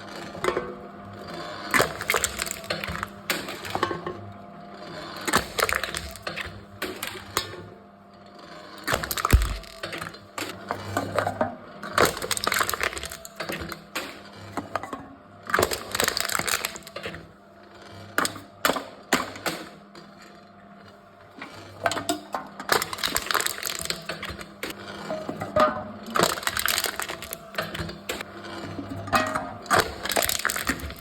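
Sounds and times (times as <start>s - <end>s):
cans being crushed by machine: 1.3s - 4.1s, 4.9s - 7.6s, 8.6s - 14.8s, 15.4s - 17.3s, 21.4s - 31.0s.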